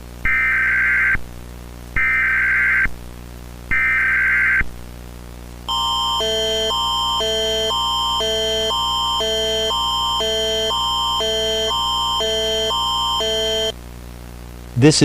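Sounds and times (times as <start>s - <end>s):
alert attention signal tones: 5.7s - 13.7s
digital data bursts: 5.7s - 13.8s.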